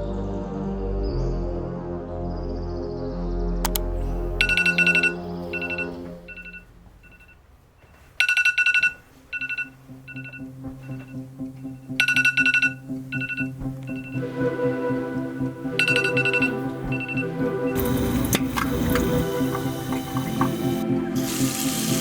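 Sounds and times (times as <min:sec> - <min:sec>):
background music chords: 0:00.0 - 0:06.7, 0:09.8 - 0:22.0
echoing beeps: 0:03.7 - 0:07.4
telephone ring sound: 0:04.4 - 0:07.4, 0:08.2 - 0:11.1, 0:12.0 - 0:14.2.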